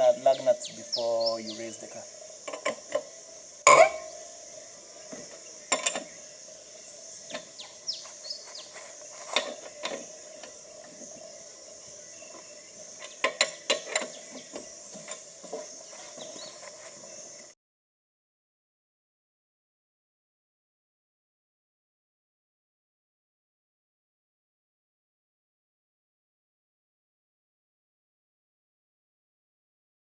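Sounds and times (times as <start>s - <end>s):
insect chirring: 0.0s - 17.6s.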